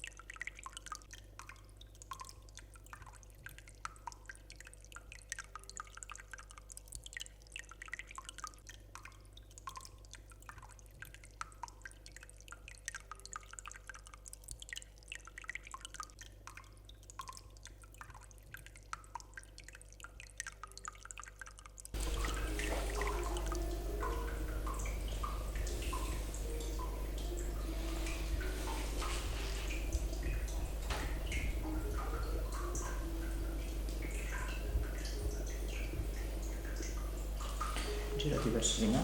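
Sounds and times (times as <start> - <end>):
drip-like plinks and ticks: 0.0 - 39.0
steady low hum: 22.0 - 39.0.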